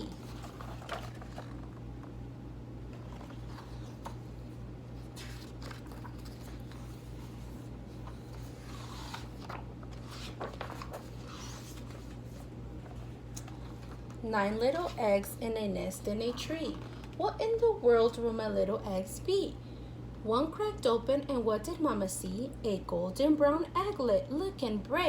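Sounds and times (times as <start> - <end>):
paper pages rustling: 0.0 - 1.8, 2.9 - 4.3, 5.0 - 15.0
steady low hum: 0.0 - 25.0.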